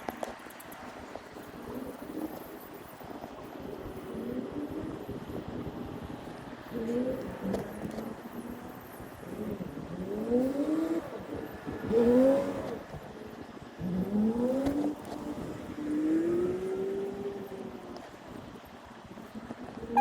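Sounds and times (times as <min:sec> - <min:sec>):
vehicle engine accelerating: 0:06.7 - 0:18.1.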